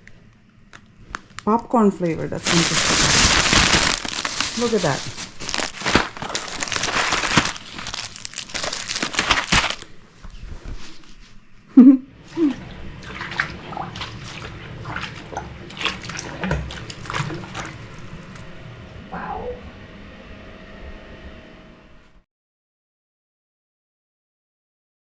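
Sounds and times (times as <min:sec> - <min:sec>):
plastic packaging crinkling: 0:00.8 - 0:01.5, 0:02.3 - 0:10.0.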